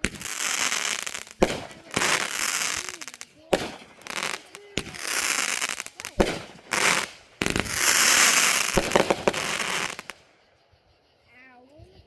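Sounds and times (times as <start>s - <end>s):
fireworks banging: 0.0s - 10.3s
fireworks crackling: 0.0s - 10.4s.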